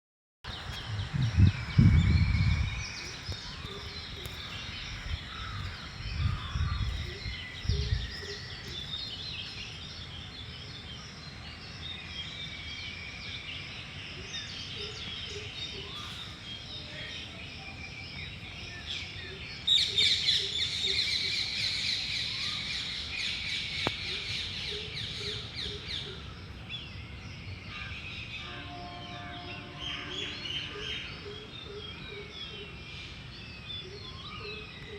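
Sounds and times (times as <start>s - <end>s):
low rumbles: 0.5s - 9.3s
small birds chirping and trilling: 0.5s - 34.9s.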